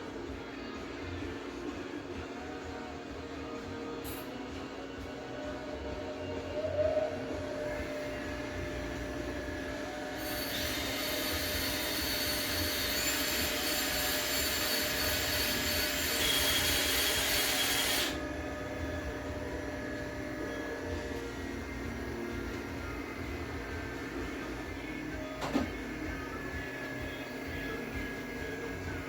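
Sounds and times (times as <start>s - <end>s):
steady machine hum: 0.0s - 29.0s
thin high whine: 2.4s - 29.0s
welding arc hissing: 10.2s - 18.2s.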